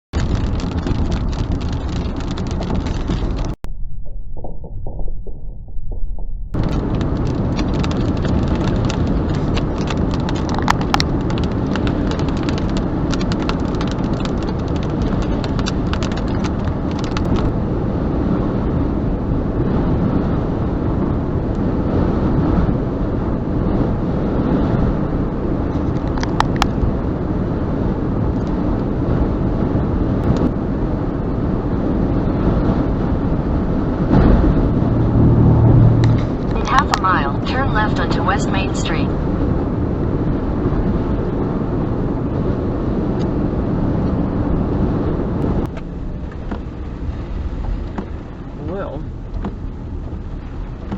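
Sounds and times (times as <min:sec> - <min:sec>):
road and wind noise in car: 0:00.1 - 0:03.6, 0:06.5 - 0:50.9
rain pattering on car: 0:00.2 - 0:03.6, 0:06.6 - 0:17.8, 0:25.4 - 0:26.9, 0:34.5 - 0:43.4, 0:44.6 - 0:50.9
sharp knocks: 0:04.0 - 0:07.9.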